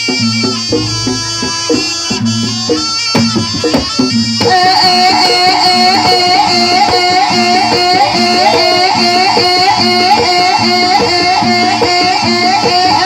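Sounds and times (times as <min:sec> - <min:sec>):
bright fast-repeating melody: 0:00.0 - 0:13.0
drums beating steady rhythm: 0:00.0 - 0:13.0
traditional ensemble dance music: 0:00.0 - 0:13.0.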